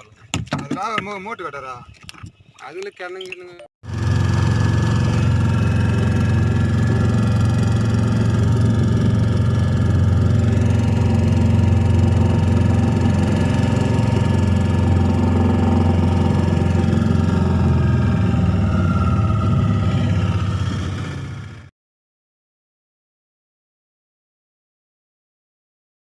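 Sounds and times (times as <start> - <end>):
engine droning steadily: 3.8 - 21.7.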